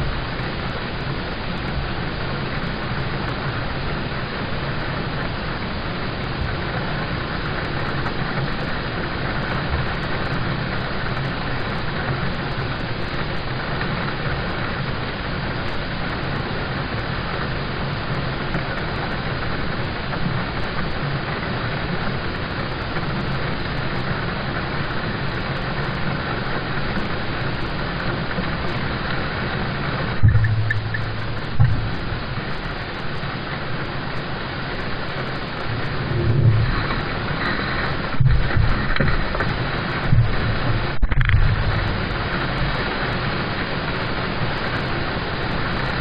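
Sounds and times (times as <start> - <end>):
low steady rumble: 0.0 - 16.2, 17.4 - 46.0
rain on a car: 0.0 - 46.0
loud low thump: 30.2 - 32.1, 36.1 - 37.1, 38.2 - 39.3.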